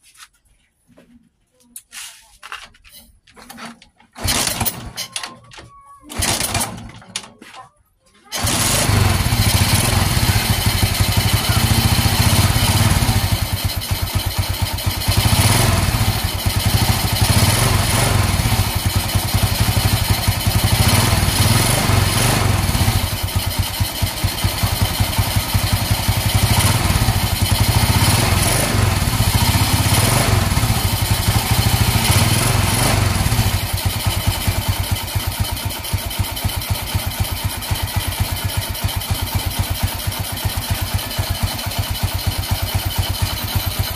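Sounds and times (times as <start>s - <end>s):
motorcycle engine idling: 8.3s - 43.9s.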